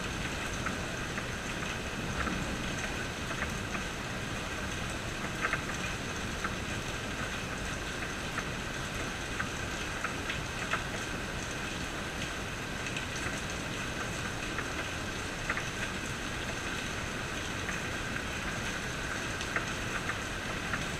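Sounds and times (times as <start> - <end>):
rain hiss: 0.0 - 20.9.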